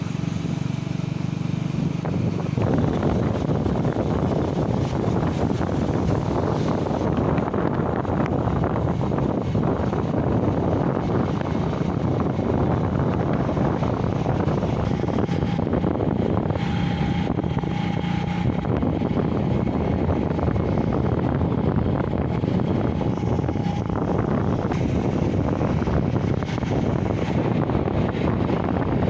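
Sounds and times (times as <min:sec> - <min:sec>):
wind on microphone: 0:00.0 - 0:29.0.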